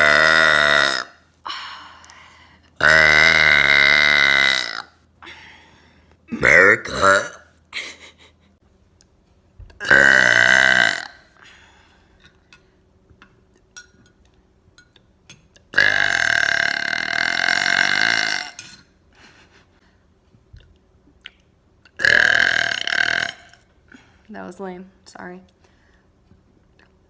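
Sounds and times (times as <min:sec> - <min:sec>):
woman burping loudly: 0:00.0 - 0:01.2, 0:02.8 - 0:05.0, 0:06.3 - 0:07.5, 0:09.8 - 0:11.4, 0:15.7 - 0:18.9, 0:22.0 - 0:23.6.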